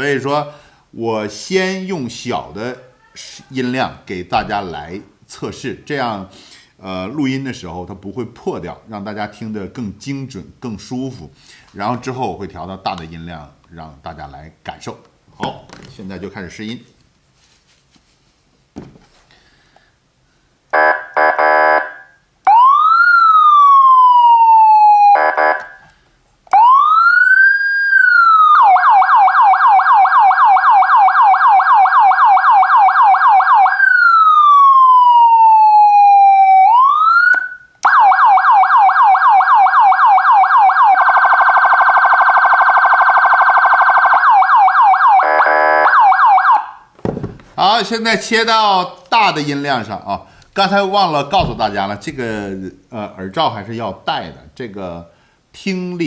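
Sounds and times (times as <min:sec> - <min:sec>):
siren horn blasts: 0:20.7 - 0:22.2, 0:24.8 - 0:25.8, 0:40.7 - 0:46.7
electronic siren wailing and yelping: 0:20.8 - 0:25.8, 0:26.5 - 0:46.9.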